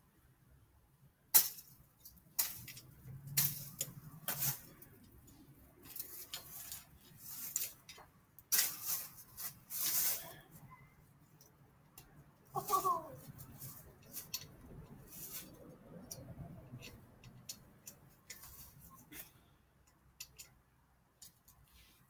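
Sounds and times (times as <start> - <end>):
hand tools clattering and scraping: 1.4 - 10.6.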